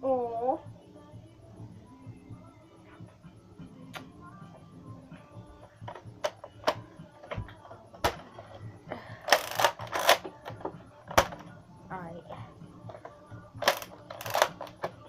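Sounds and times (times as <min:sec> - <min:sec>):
plastic toy blaster clicks: 0:09.3 - 0:11.4, 0:13.6 - 0:14.9.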